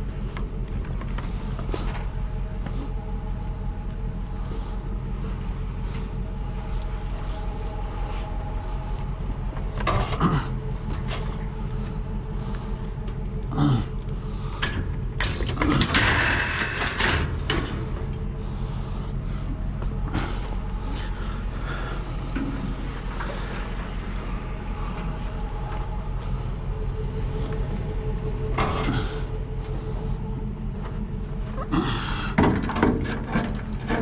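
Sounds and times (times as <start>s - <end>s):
vehicle engine rumbling: 0.0s - 34.0s
rattling clatter: 22.0s - 25.9s, 32.4s - 34.0s.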